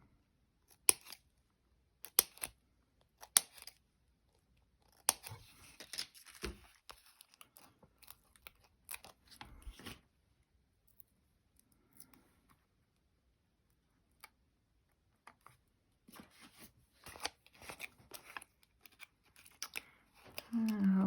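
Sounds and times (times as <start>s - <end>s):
scissors snipping tape: 0.7s - 1.2s, 2.0s - 2.6s, 3.2s - 3.8s.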